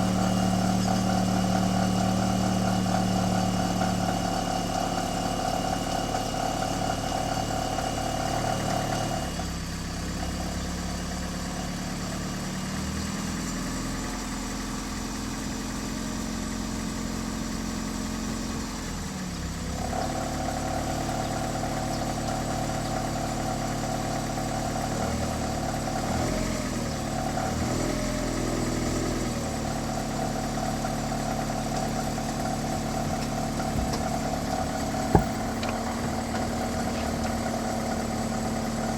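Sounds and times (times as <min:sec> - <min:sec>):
car engine idling: 0:00.0 - 0:38.9
engine whine: 0:25.3 - 0:38.9.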